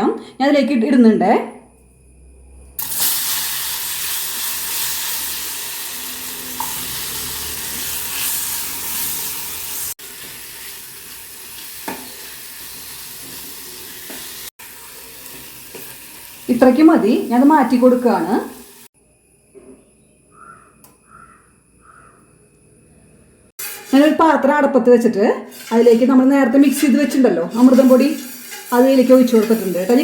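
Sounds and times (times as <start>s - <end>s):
banana sizzling in a pan: 2.8s - 18.9s, 23.6s - 24.6s, 25.4s - 30.0s.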